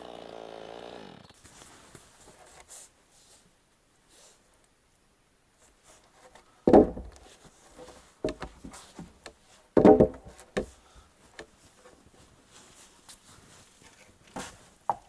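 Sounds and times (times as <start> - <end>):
heavy wooden thuds: 6.7 - 9.2, 9.8 - 10.8.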